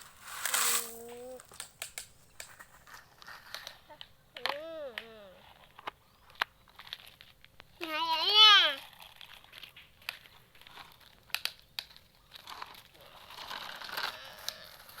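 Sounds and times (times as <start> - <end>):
crinkling rustling handling noise: 0.0 - 3.8.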